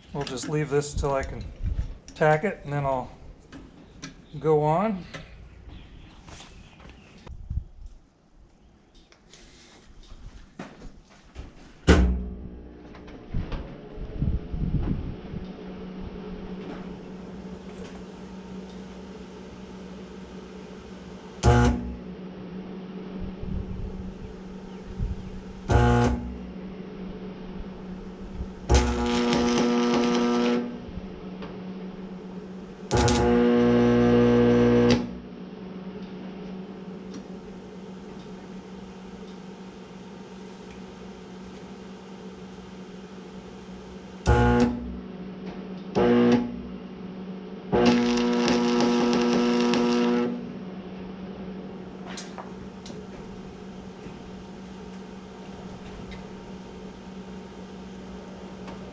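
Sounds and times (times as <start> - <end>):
steady low hum: 0.0 - 58.9
welding arc buzzing and crackling: 16.7 - 22.2, 25.5 - 39.4, 42.5 - 45.1, 45.9 - 46.9, 47.7 - 57.0.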